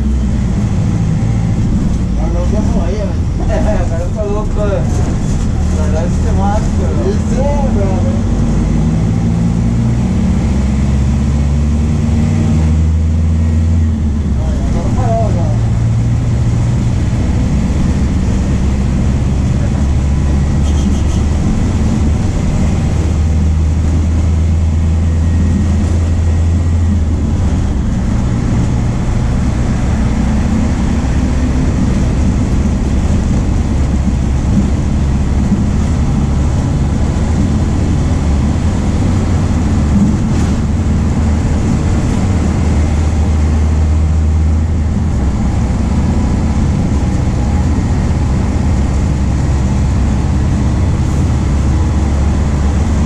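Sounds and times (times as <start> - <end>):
bus diesel engine running: 0.0 - 53.0.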